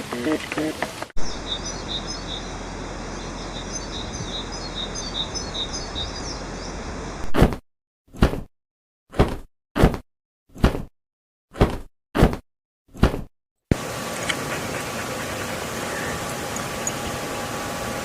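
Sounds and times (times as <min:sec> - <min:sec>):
outdoor background noise: 0:00.0 - 0:07.6, 0:13.7 - 0:18.0
small birds chirping: 0:00.1 - 0:07.2, 0:14.0 - 0:17.3
short sharp thuds: 0:07.2 - 0:07.6.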